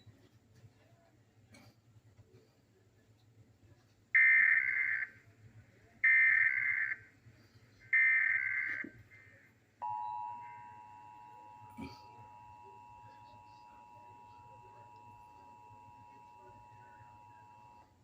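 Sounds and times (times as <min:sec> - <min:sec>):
two-tone attention signal: 0:09.8 - 0:17.9.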